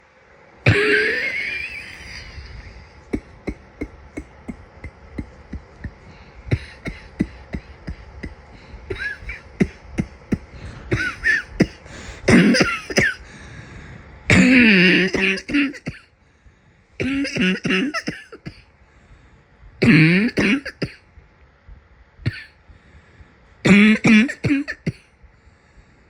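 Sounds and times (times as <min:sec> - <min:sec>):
person coughing: 0:00.7 - 0:13.2, 0:14.3 - 0:16.0, 0:17.0 - 0:18.6, 0:19.8 - 0:21.0, 0:22.3 - 0:22.6, 0:23.6 - 0:25.1.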